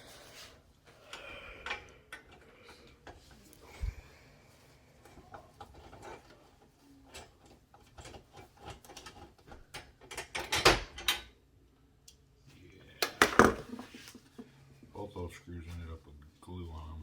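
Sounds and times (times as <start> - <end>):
small clicks of metal parts: 1.1 - 3.6, 7.1 - 11.3.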